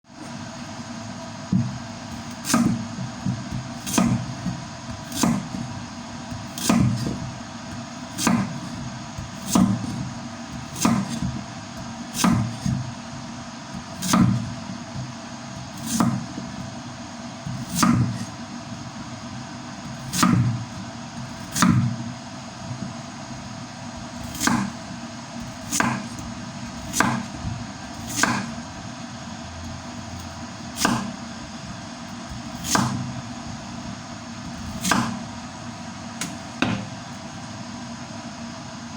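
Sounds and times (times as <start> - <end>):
steady background hum: 0.1 - 38.9
knife chopping carrots on board: 1.5 - 16.8, 17.4 - 18.4, 19.8 - 22.0, 24.0 - 28.8, 29.7 - 35.3, 36.2 - 36.9.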